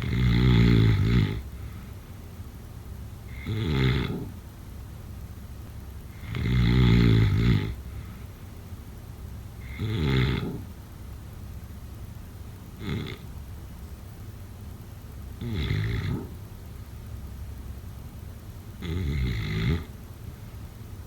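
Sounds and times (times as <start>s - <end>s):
loud snoring: 0.0s - 1.5s, 3.3s - 4.4s, 6.1s - 7.8s, 9.6s - 10.7s, 12.8s - 13.2s, 15.4s - 16.4s, 18.8s - 19.9s
quiet breathing: 0.0s - 2.4s, 6.0s - 8.8s.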